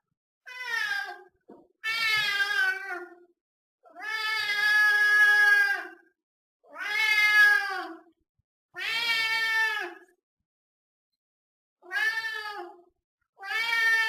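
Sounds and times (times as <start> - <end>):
cat meowing: 0.5 - 3.2, 3.9 - 6.0, 6.7 - 8.0, 8.8 - 10.0, 11.8 - 14.0.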